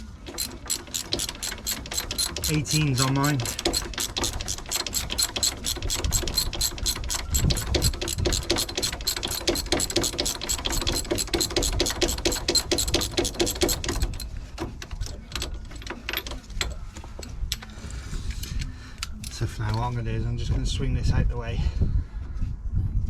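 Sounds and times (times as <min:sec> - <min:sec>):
ratchet wrench clicking: 0:00.3 - 0:14.2.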